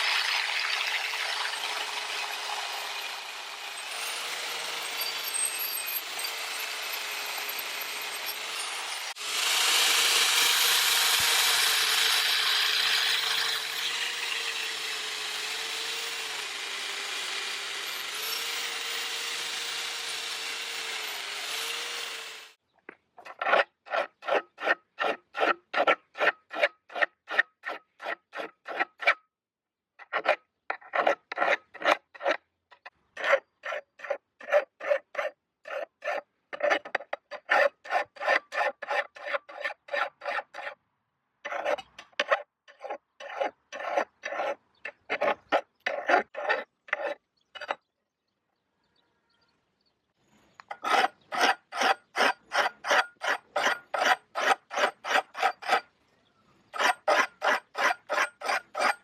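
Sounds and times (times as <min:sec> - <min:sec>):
angle grinder running: 0:00.0 - 0:22.6
hand file rasping strokes: 0:01.1 - 0:22.6, 0:23.2 - 0:29.2, 0:30.0 - 0:32.4, 0:33.2 - 0:40.8, 0:41.5 - 0:47.8, 0:50.6 - 0:55.9, 0:56.7 - 0:59.0.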